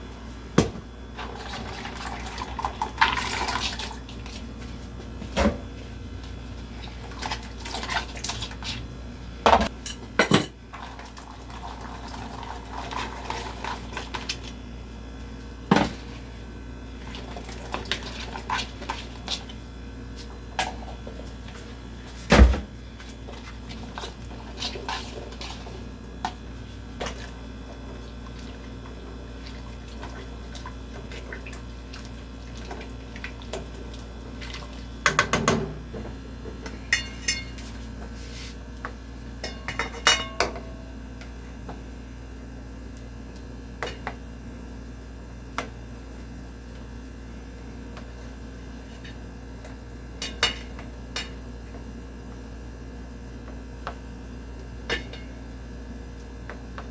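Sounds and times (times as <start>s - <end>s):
steady low hum: 0.0s - 56.9s
kitchen utensils clinking: 36.9s - 37.6s.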